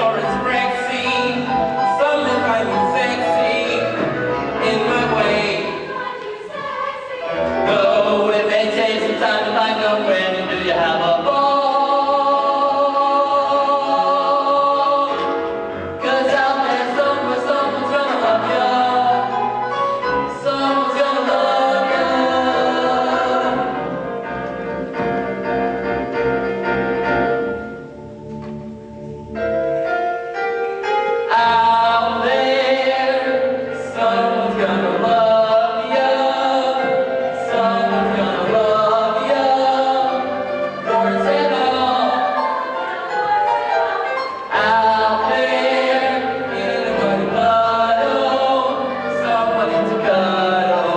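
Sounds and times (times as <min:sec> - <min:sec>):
children's chorus singing: 0:04.6 - 0:10.6, 0:11.2 - 0:15.4, 0:20.6 - 0:23.8, 0:32.0 - 0:50.9.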